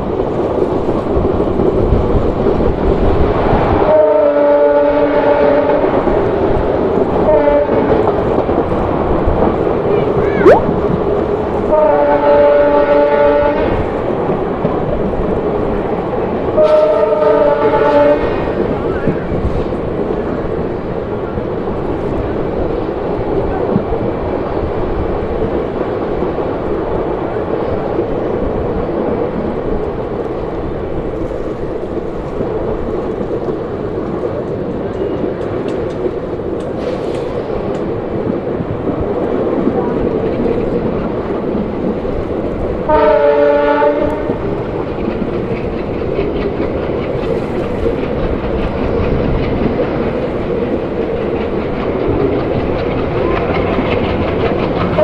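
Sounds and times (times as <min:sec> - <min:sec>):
train rumbling along track: 0:00.0 - 0:55.0
multi-tone train horn: 0:03.8 - 0:05.9, 0:07.2 - 0:08.0, 0:11.6 - 0:13.8, 0:16.6 - 0:18.4, 0:42.9 - 0:44.4.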